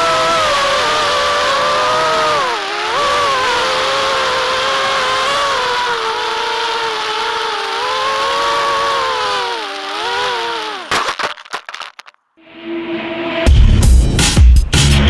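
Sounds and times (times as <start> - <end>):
quadcopter motors whining: 0.0 - 12.1.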